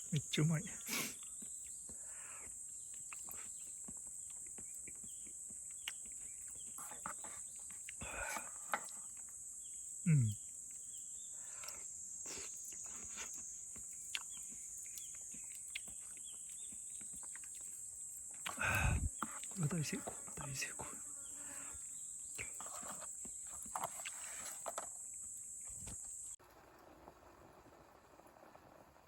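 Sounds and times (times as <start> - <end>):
insects shrilling: 0.0 - 26.4
man humming: 10.1 - 10.4, 18.6 - 19.1.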